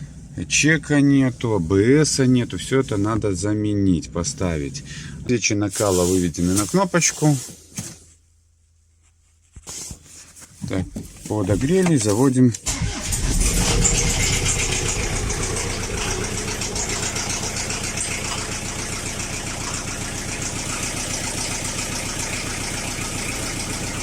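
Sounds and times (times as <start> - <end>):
diesel engine starting and idling: 12.6 - 24.0.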